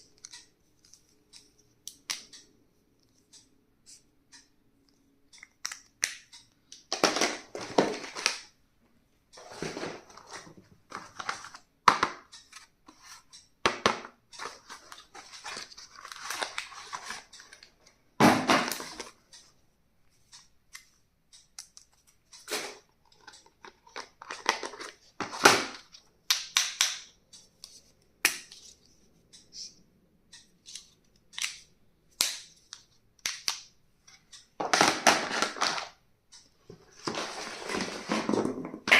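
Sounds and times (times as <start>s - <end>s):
packaging crackling and rustling: 7.0s - 8.5s.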